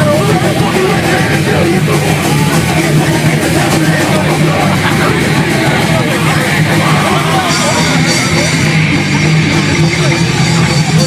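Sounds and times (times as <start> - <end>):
shouted vocals: 0.0 - 8.8
punk band playing live: 0.0 - 11.0.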